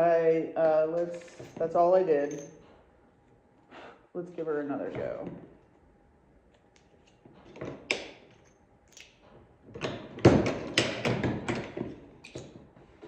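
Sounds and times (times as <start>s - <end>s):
metal clanks and knocks: 9.2s - 12.6s.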